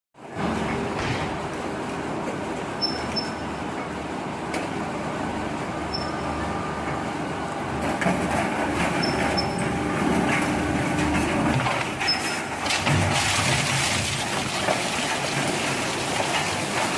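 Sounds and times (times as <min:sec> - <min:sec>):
metal clanks and squeals: 0:08.7 - 0:10.5, 0:11.6 - 0:12.8.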